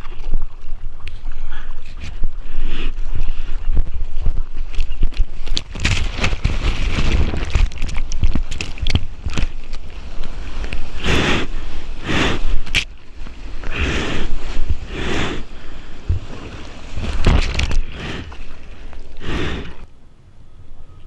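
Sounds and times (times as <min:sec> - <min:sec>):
wind buffeting microphone: 0:00.0 - 0:18.2
surf splashing and rushing: 0:05.6 - 0:19.9.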